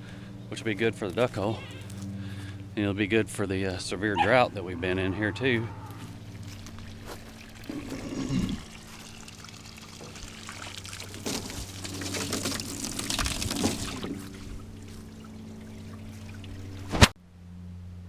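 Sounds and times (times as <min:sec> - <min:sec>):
low hum: 0:00.0 - 0:18.0
water pouring and splashing: 0:06.4 - 0:17.1.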